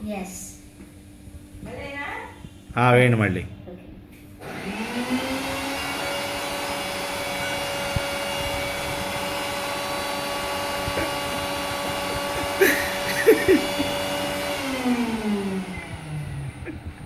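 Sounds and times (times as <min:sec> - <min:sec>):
mixer grinder motor whining: 0:04.4 - 0:17.0.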